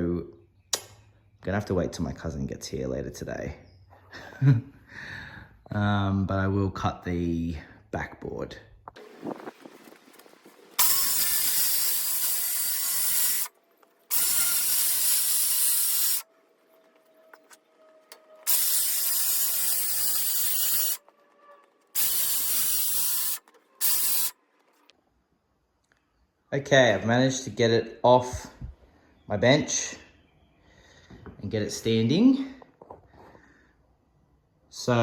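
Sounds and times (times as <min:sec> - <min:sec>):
power saw cutting plywood: 0:10.8 - 0:24.4.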